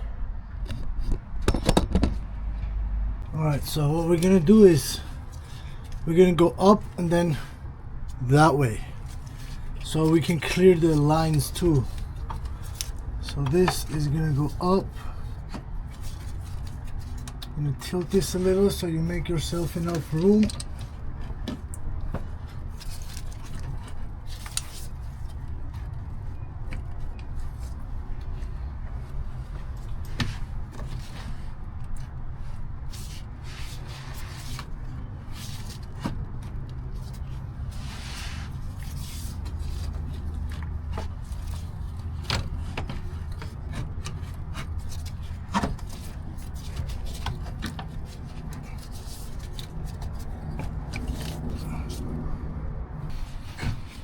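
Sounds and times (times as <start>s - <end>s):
steady low hum: 0.0s - 54.0s
metal clicks knocks and scrapes: 0.6s - 2.8s.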